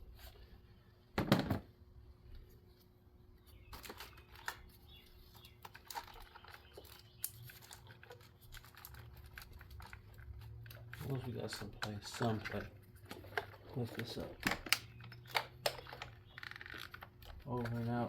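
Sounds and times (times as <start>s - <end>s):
plastic wiring harness rustling: 3.7s - 18.0s.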